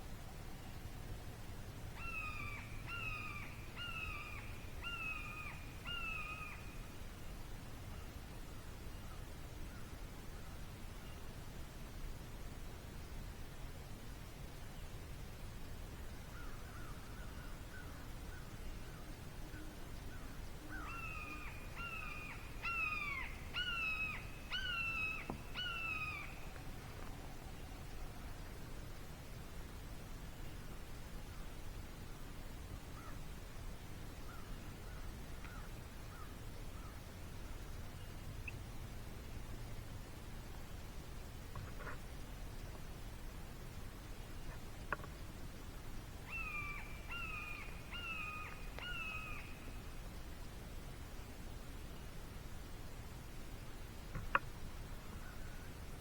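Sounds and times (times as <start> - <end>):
bird calling: 16.3 - 27.6, 46.2 - 49.8.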